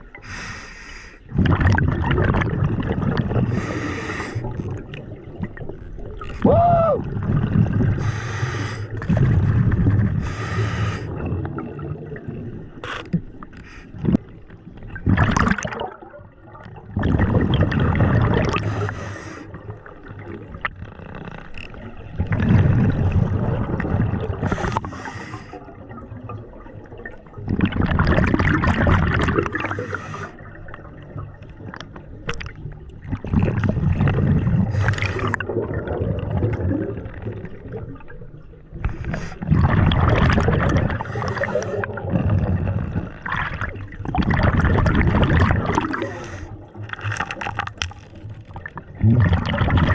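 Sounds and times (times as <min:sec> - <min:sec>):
diver breathing through regulator: 0:00.2 - 0:01.3, 0:03.4 - 0:04.6, 0:08.0 - 0:11.2, 0:18.5 - 0:19.6, 0:24.4 - 0:25.6, 0:29.6 - 0:30.4, 0:34.6 - 0:35.4, 0:41.0 - 0:42.0, 0:45.8 - 0:46.6
exhaled bubbles gurgling: 0:01.2 - 0:49.9.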